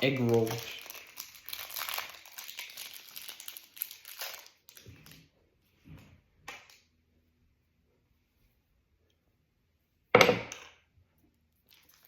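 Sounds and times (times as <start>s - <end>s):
plastic packaging crinkling: 0.0s - 5.4s.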